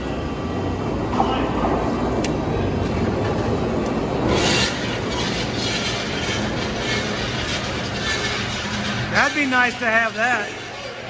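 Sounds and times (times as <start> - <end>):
saw cutting steel: 4.2 - 11.0.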